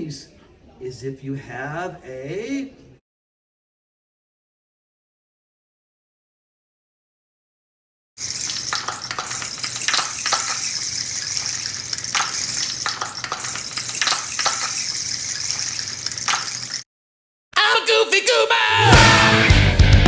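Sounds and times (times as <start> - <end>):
rain stick cascading: 8.2 - 16.9.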